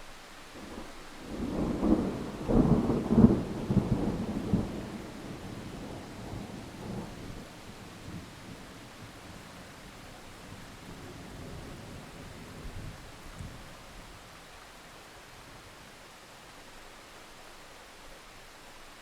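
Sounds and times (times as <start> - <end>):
rain hissing: 0.0 - 19.0
low thunder roll: 1.2 - 9.5.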